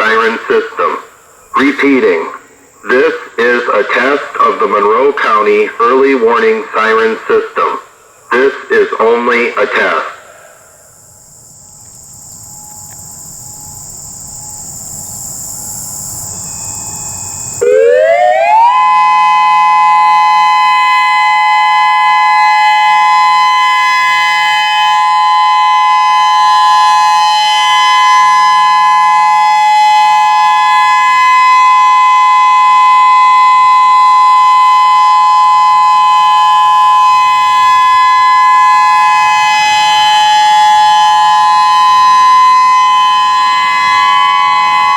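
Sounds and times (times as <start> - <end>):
high hiss: 0.0 - 17.7.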